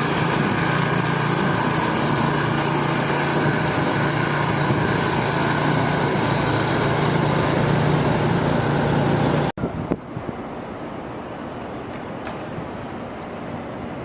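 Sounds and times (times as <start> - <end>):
small engine running: 0.0 - 9.5.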